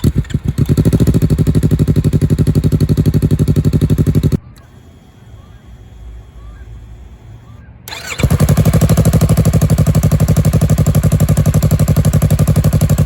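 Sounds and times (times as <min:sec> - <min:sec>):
motorcycle engine starting and idling: 0:00.0 - 0:13.0.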